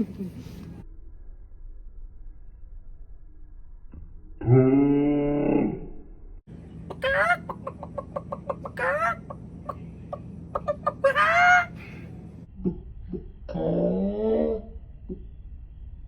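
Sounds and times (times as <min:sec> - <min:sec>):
person imitating chicken clucks: 0:06.8 - 0:11.8.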